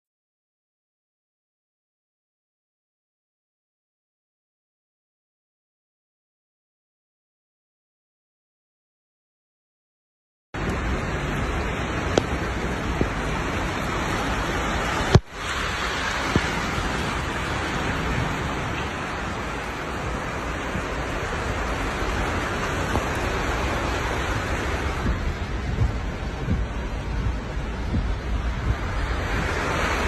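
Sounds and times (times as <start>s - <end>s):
heavy rain pouring: 10.6s - 30.0s.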